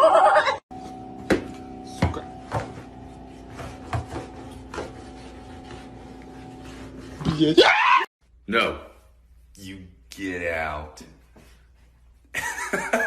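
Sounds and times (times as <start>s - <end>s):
cat yowling: 7.4s - 8.1s.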